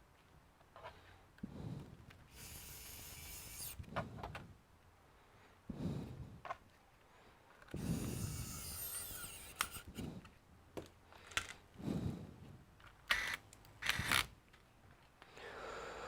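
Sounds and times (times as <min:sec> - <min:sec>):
electric screwdriver running: 0:02.3 - 0:03.8, 0:07.8 - 0:10.0, 0:13.1 - 0:14.3
tool and parts handling: 0:07.5 - 0:11.6.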